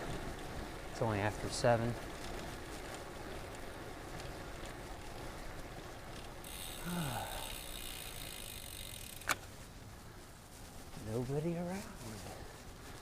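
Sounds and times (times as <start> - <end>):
bicycle rolling on road: 0.0 - 13.0.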